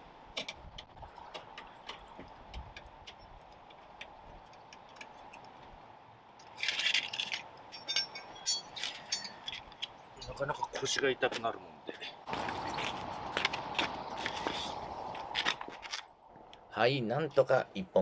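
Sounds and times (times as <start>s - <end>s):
metal rattling and scraping: 6.5s - 10.4s
ringing metal clinks: 7.7s - 9.5s.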